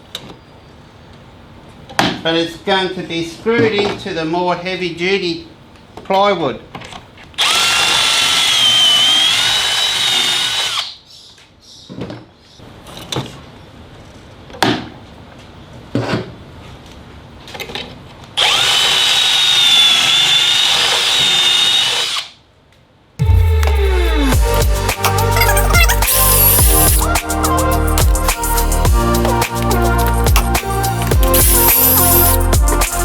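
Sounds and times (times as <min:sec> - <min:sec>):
power drill whining: 0:07.4 - 0:10.9, 0:18.4 - 0:22.3, 0:25.2 - 0:27.1, 0:31.2 - 0:32.4.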